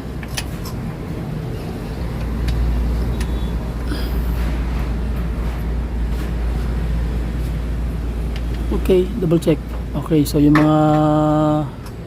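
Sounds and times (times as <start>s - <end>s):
vehicle engine rumble: 0.0s - 12.0s.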